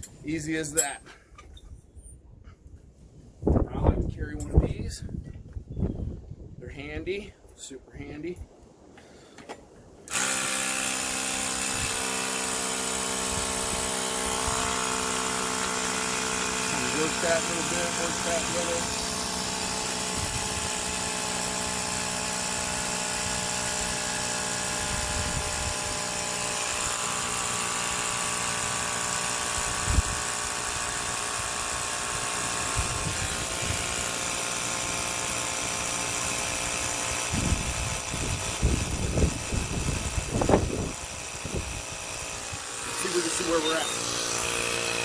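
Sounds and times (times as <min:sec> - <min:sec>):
electric air compressor running: 0:10.1 - 0:45.0.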